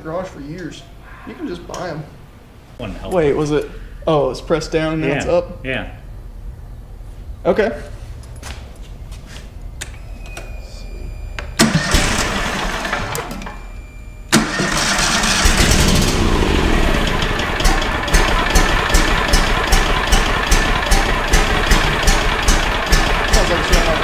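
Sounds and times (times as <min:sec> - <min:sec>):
engine starting and running: 0:09.8 - 0:24.0
regular ticking: 0:16.9 - 0:24.0.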